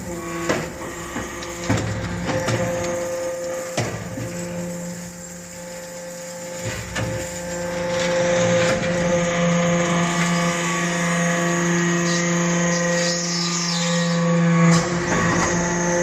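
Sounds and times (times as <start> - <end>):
hydraulic press hum: 0.0 - 16.0.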